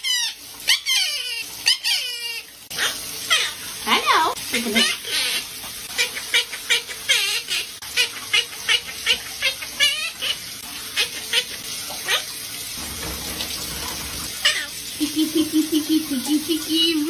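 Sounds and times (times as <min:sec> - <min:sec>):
parrot chirping: 0:00.0 - 0:03.6, 0:04.8 - 0:05.4, 0:06.0 - 0:12.3, 0:14.4 - 0:14.8.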